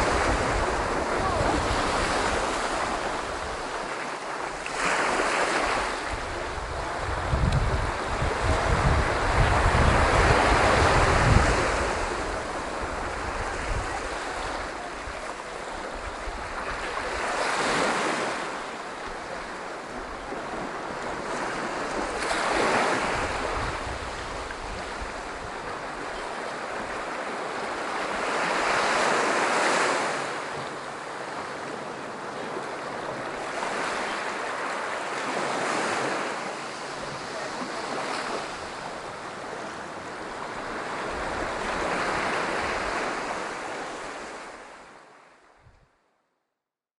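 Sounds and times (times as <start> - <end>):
wind rumble on microphone: 0.0 - 3.9, 5.6 - 17.4, 19.0 - 28.5, 45.5 - 46.0
sea waves breaking on beach: 0.0 - 45.5.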